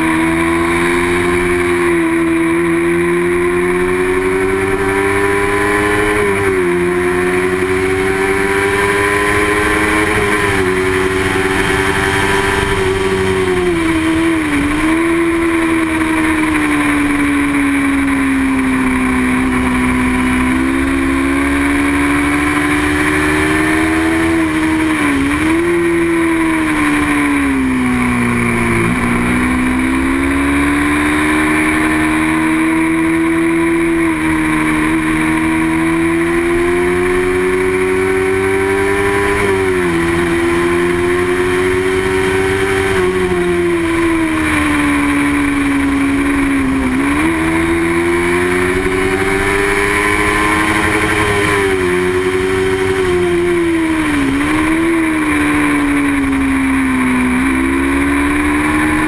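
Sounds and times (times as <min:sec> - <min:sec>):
racing motorcycle engine revving: 0:00.0 - 0:59.0.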